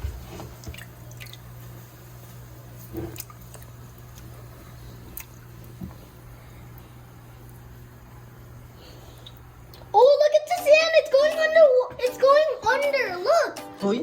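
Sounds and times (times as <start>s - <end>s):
water dripping: 0.6s - 1.6s.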